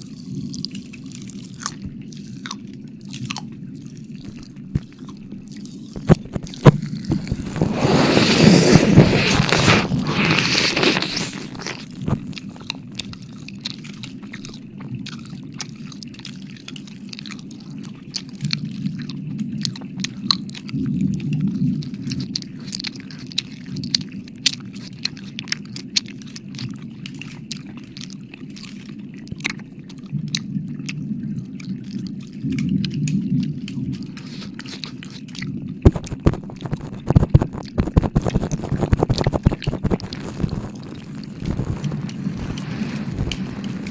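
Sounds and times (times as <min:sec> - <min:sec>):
wet mouth clicks and smacks: 0:00.5 - 0:43.9
breathy rush: 0:07.1 - 0:11.6.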